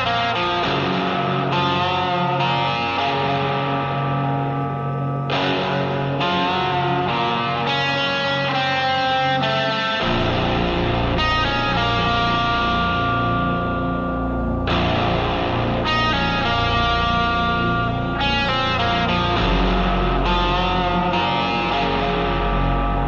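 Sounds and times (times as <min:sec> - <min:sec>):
distorted electric guitar chords: 0:00.0 - 0:23.0
heavy bass: 0:10.0 - 0:23.0.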